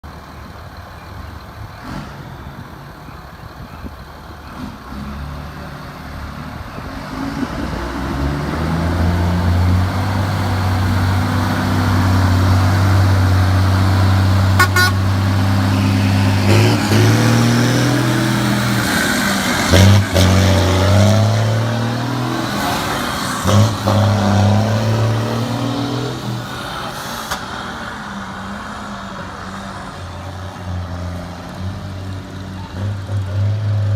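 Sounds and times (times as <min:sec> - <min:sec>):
diesel truck engine drone: 0:00.0 - 0:33.9.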